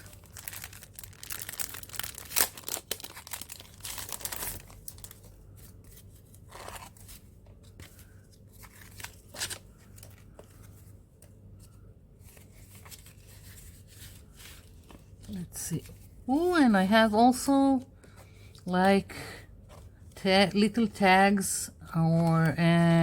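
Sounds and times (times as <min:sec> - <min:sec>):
plastic packaging crinkling: 0:00.0 - 0:07.2.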